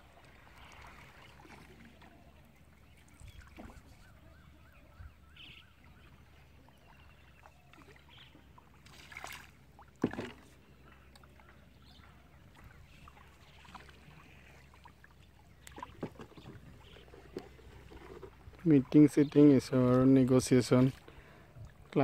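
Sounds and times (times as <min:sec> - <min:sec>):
water sloshing: 0:00.0 - 0:22.0
light knocks and splashes: 0:00.2 - 0:02.2, 0:03.0 - 0:04.1, 0:06.7 - 0:19.0.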